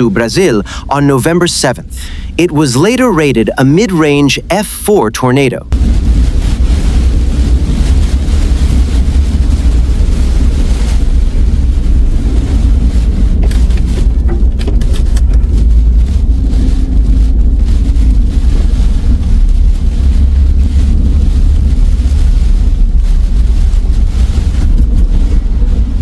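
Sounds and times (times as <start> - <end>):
tornado wind rumbling: 0.0 - 26.0
sharp crackles or knocks: 5.7 - 26.0.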